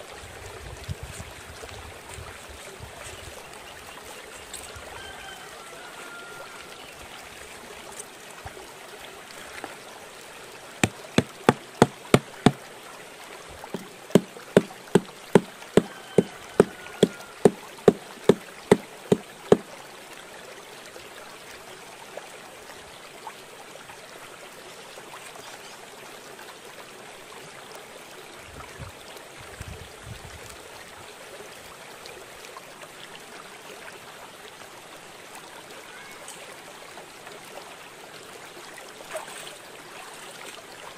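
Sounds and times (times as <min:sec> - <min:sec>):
stream water running: 0:00.0 - 0:40.9
sharp evenly spaced knocks: 0:10.8 - 0:12.6, 0:13.8 - 0:19.6.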